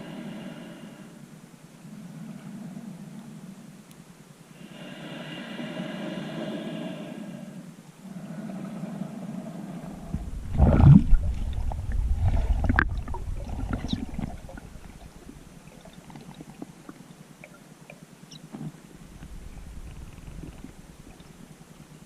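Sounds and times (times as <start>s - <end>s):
water churning and gurgling: 8.0s - 22.0s.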